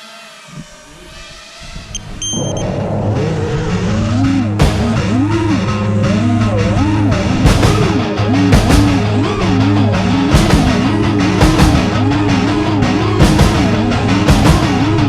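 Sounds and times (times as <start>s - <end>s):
distorted rock guitar: 0.5s - 15.0s
driving drum beat: 4.4s - 5.8s, 6.6s - 15.0s.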